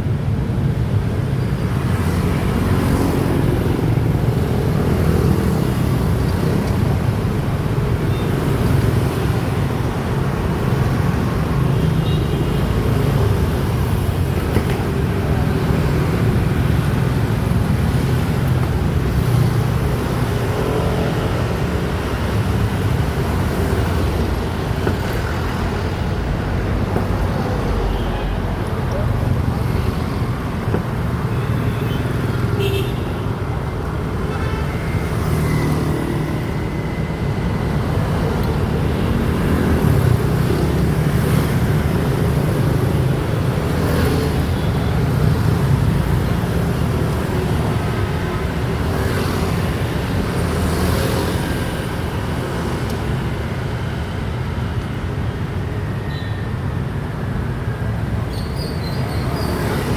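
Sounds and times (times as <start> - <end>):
traffic: 0.0 - 59.9
low road rumble: 12.6 - 56.0.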